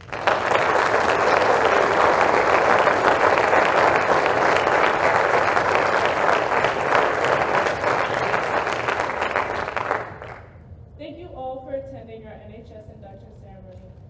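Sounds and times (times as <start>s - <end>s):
audience applauding: 0.0s - 10.5s.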